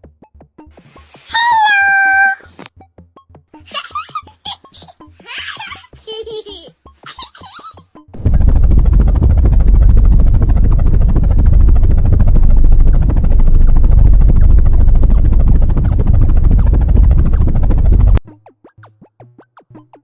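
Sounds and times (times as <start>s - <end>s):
helicopter rotor chop: 8.2s - 18.2s.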